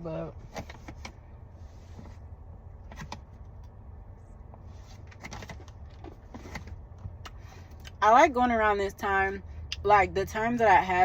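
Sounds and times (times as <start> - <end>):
low steady rumble: 0.0 - 11.0.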